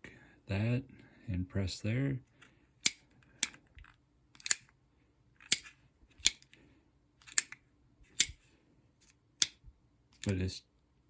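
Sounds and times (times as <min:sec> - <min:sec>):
folding knife clicking: 0:04.4 - 0:04.7, 0:05.4 - 0:06.5, 0:07.2 - 0:08.4.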